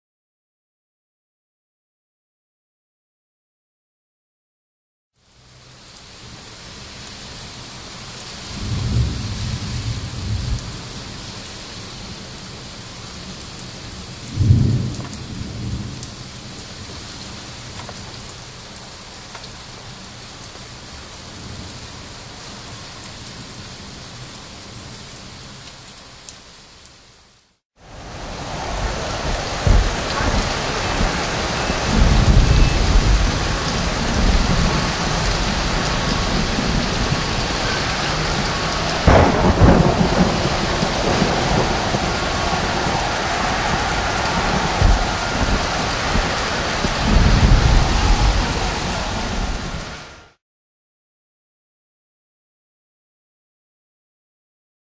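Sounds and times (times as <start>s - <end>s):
heavy rain hiss: 5.2s - 50.4s
thunder rumbling: 8.5s - 11.2s, 14.2s - 16.9s, 27.8s - 50.2s.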